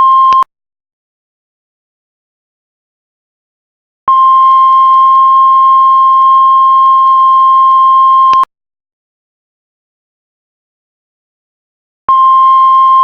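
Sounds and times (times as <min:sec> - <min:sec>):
heart monitor flatline beep: 0:00.0 - 0:00.5, 0:04.1 - 0:08.5, 0:12.1 - 0:13.0.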